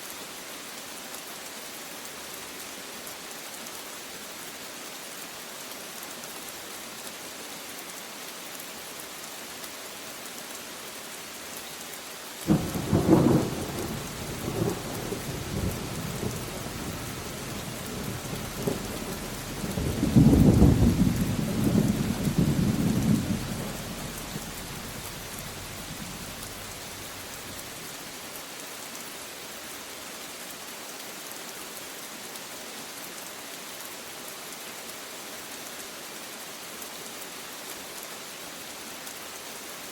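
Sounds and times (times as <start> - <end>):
steady rain falling: 0.0 - 39.9
thunder rumbling: 12.5 - 27.6.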